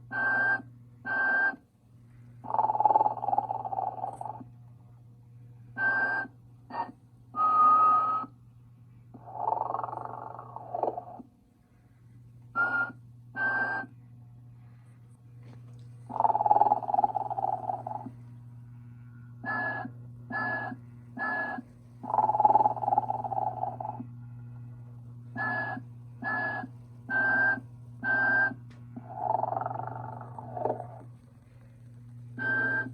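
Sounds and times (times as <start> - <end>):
steady low hum: 0.0 - 32.9
electric toy snoring: 2.4 - 4.5, 9.2 - 11.3, 16.1 - 18.2, 19.5 - 24.1, 29.0 - 32.9.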